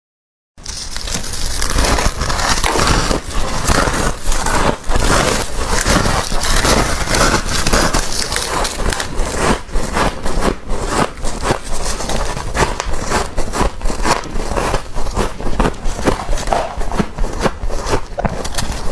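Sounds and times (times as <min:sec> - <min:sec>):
frost crunching and scraping: 0:00.6 - 0:18.9.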